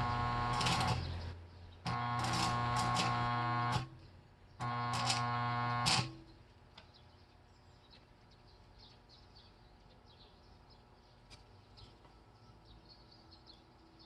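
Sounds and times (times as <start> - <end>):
arc welding buzz and crackle: 0.0 - 4.0, 4.6 - 6.2.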